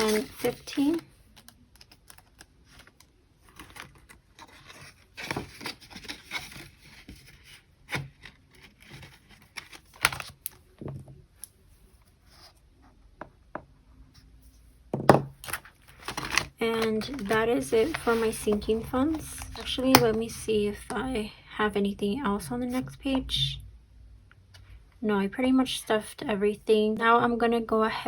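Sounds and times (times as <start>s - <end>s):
paper bills rustling: 0.0s - 10.6s, 15.4s - 20.4s.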